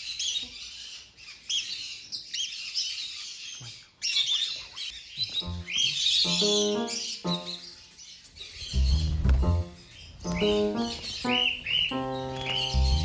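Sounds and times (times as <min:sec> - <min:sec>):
parrots chirping and chattering: 0:00.0 - 0:13.0
music: 0:05.4 - 0:07.9, 0:08.6 - 0:13.0.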